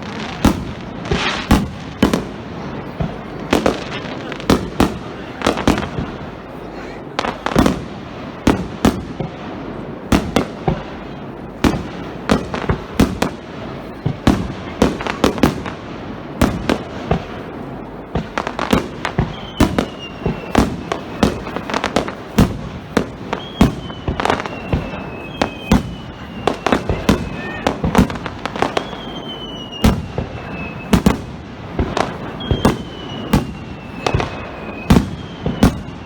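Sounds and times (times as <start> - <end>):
fireworks shells bursting: 0.0 - 2.2, 18.2 - 36.0
fireworks whistling downward: 0.0 - 36.0.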